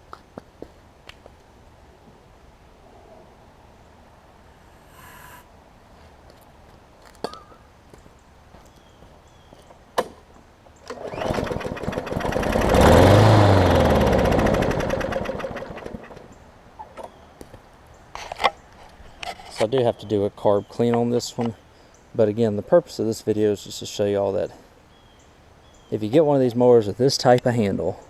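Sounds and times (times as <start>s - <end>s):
lawn mower engine starting: 10.8s - 17.1s.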